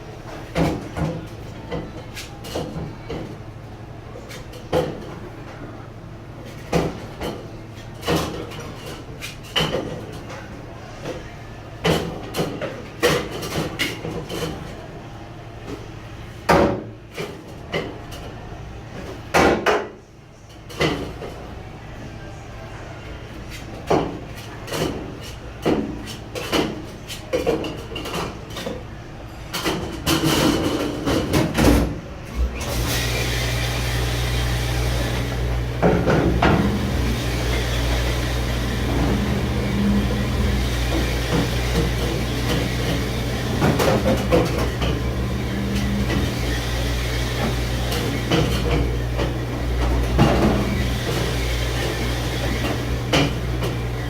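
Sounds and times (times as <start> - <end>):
dishes and racks clattering: 6.5 - 11.2, 23.7 - 28.9, 29.5 - 31.9, 34.6 - 54.0
dishwasher hum with rushing spray: 32.3 - 54.0.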